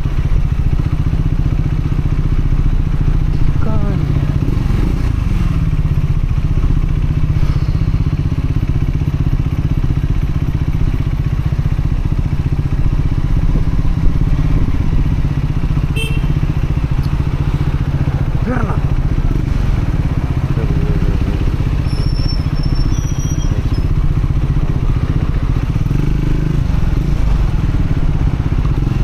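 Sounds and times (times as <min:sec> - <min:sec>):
motorcycle engine running steadily: 0:00.0 - 0:29.0.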